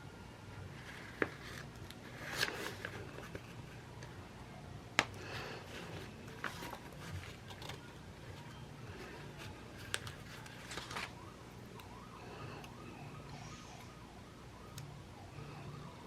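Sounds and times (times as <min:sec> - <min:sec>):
television hum: 0:00.0 - 0:16.0
faint wavering tone: 0:11.2 - 0:16.0.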